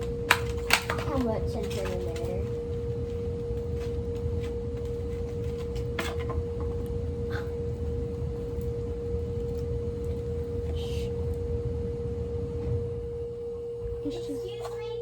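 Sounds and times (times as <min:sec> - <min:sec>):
faint clicks and rustles: 0:00.0 - 0:11.5
low rumble: 0:00.0 - 0:14.5
steady single-pitched hum: 0:00.0 - 0:15.0.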